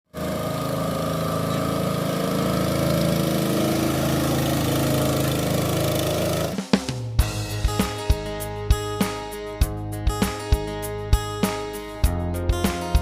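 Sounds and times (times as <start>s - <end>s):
small boat engine running: 0.1s - 6.8s.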